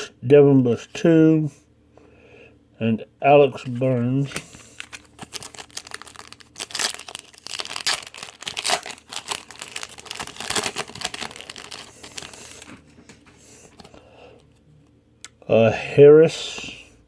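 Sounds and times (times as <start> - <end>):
wrapper being torn and crinkled: 4.8 - 12.7.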